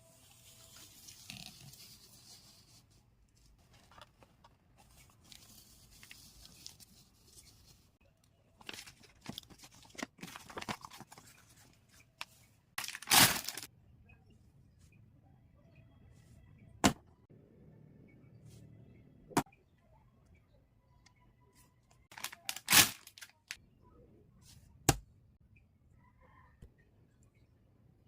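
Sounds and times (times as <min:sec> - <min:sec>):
plastic bags crinkling and tearing: 0:12.8 - 0:13.7, 0:22.1 - 0:23.6.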